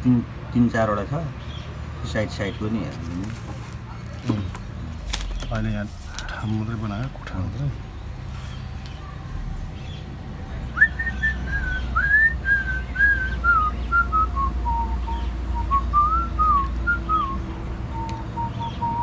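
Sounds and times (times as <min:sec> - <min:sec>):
person whistling a tune: 0:10.8 - 0:17.4.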